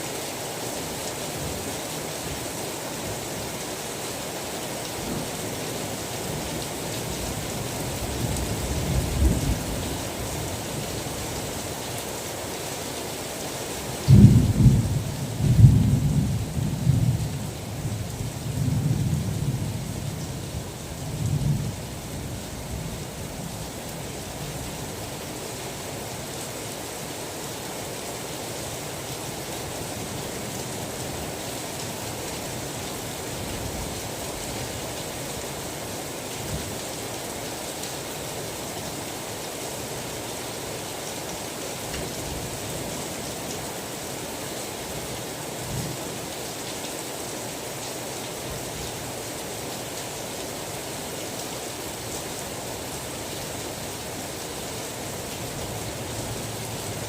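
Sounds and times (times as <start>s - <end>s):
steady rain: 0.0s - 57.0s
thunder rumbling: 14.1s - 17.2s.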